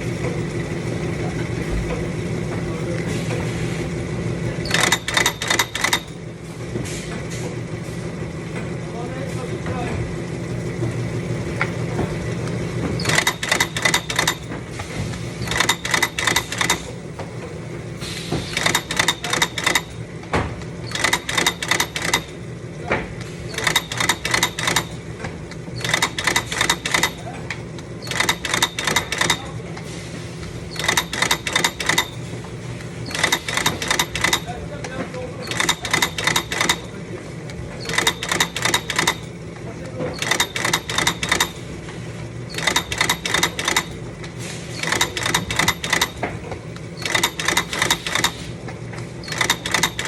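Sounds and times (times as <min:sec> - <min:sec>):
taping machine clattering clicks: 0:04.6 - 0:06.2, 0:12.4 - 0:22.5, 0:23.1 - 0:30.0, 0:30.7 - 0:50.0.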